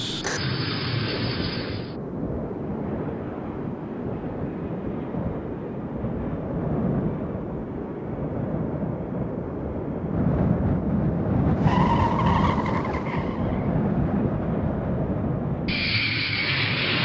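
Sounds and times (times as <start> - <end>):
pitched squeal: 0.0 - 0.4, 15.7 - 17.0
wind and engine rumble: 1.1 - 17.0.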